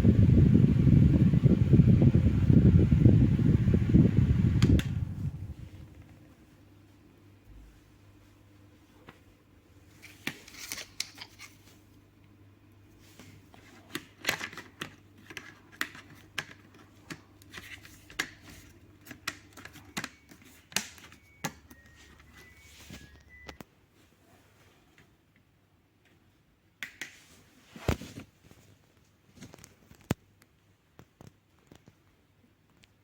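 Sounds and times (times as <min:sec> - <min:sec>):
low steady hum: 0:00.0 - 0:14.0
plastic fan parts clicking: 0:04.5 - 0:05.2, 0:13.9 - 0:21.8.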